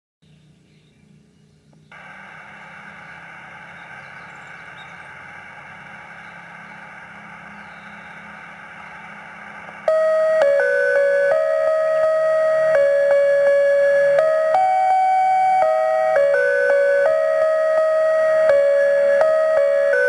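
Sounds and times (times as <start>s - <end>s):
steady line hiss: 0.4s - 20.0s
loudspeaker switching on: 1.9s - 20.0s
electronic chime tones: 9.9s - 20.0s.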